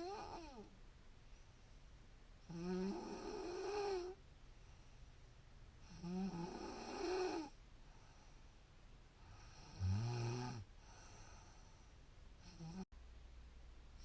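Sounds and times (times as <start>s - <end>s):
woman snoring: 0.0s - 0.7s, 2.5s - 4.2s, 5.9s - 7.5s, 9.4s - 11.2s, 12.4s - 12.9s.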